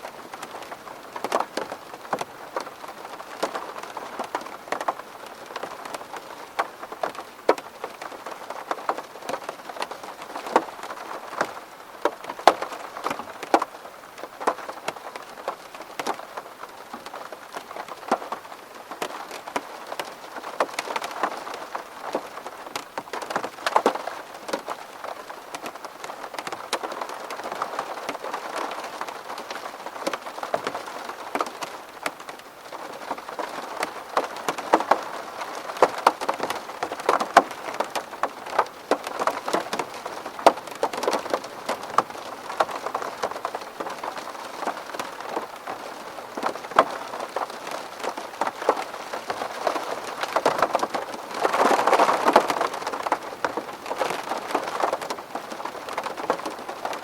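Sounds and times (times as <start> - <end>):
rain pattering on window glass: 0.0 - 57.0.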